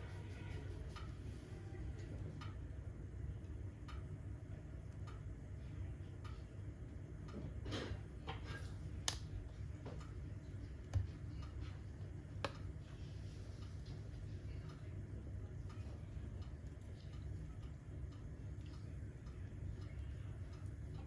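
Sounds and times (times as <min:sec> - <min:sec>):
wood fire crackling and popping: 0:08.9 - 0:10.1.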